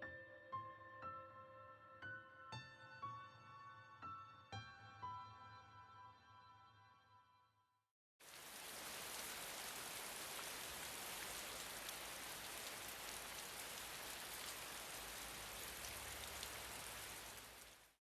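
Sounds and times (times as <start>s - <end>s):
music: 0.0s - 7.9s
steady hiss like rain: 8.2s - 18.0s.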